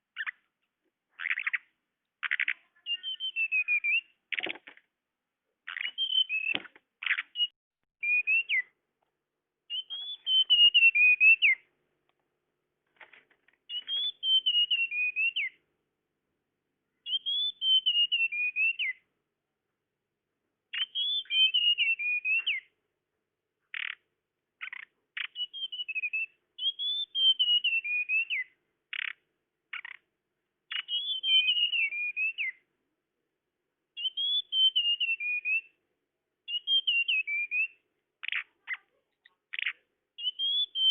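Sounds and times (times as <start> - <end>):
bird call whistled phrases: 1.2 - 4.5, 5.7 - 8.8, 9.7 - 11.7, 13.7 - 15.6, 17.0 - 19.0, 20.7 - 22.7, 24.6 - 29.2, 30.7 - 32.6, 34.0 - 35.8, 36.5 - 40.9.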